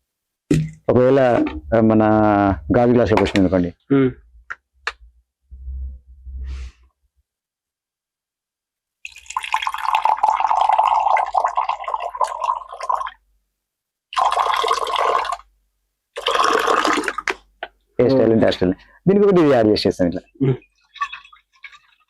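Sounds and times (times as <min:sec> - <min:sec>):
liquid pouring into glass: 0:09.0 - 0:13.2, 0:14.2 - 0:15.4, 0:16.2 - 0:17.3, 0:20.8 - 0:22.0.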